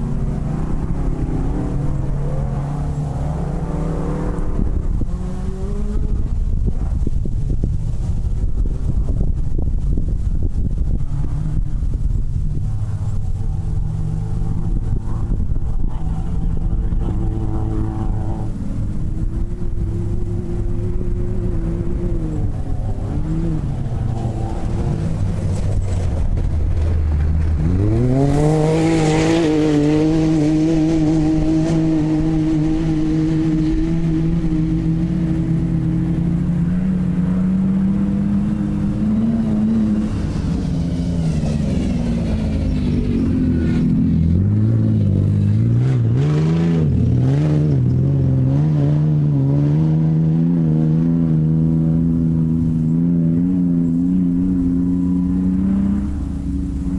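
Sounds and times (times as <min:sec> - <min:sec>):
buggy engine running hard: 0:00.0 - 0:56.9.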